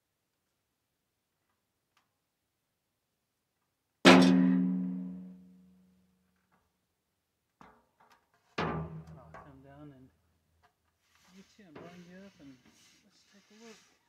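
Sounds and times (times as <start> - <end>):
loud hollow bang: 4.1 - 5.2.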